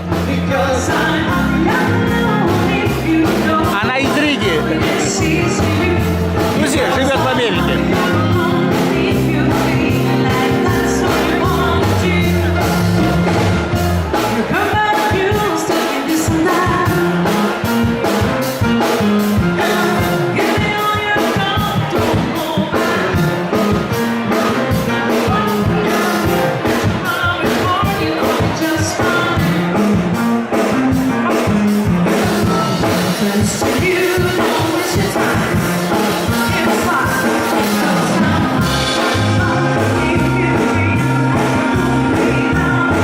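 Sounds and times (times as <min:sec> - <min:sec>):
loud music with singing: 0:00.0 - 0:43.0.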